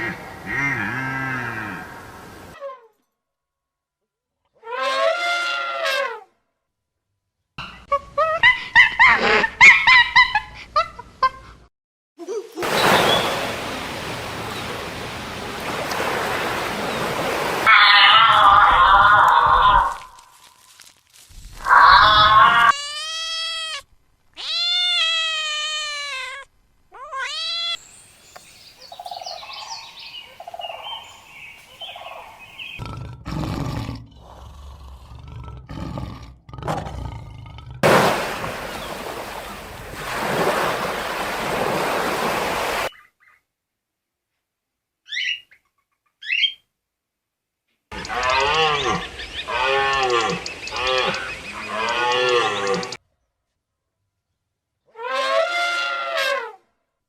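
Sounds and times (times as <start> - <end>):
rough noisy animal call: 17.6 - 20.3, 21.6 - 23.7
animal wavering cries: 17.7 - 20.2, 21.7 - 23.8.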